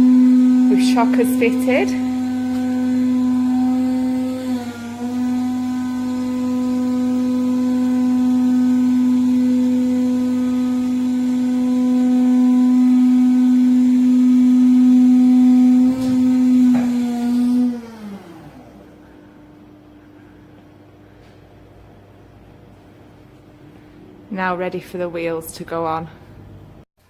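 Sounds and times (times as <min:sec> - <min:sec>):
loud machine hum: 0:00.0 - 0:20.9.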